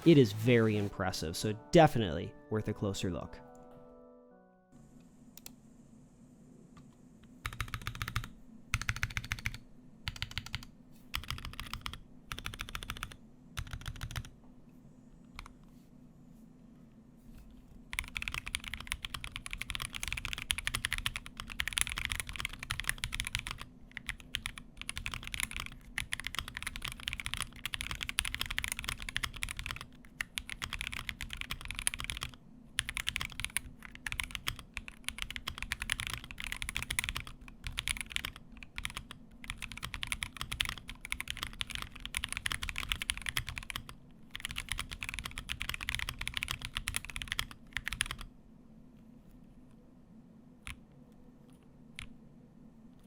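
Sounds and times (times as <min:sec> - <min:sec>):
mechanical keyboard typing: 0:07.4 - 0:14.3, 0:17.9 - 0:48.3.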